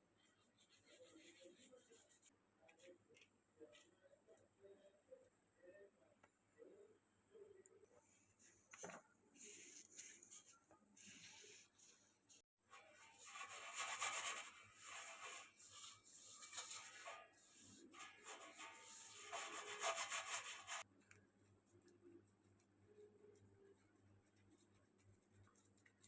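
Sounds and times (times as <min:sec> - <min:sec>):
rubbing or scraping strokes: 0:08.4 - 0:20.9.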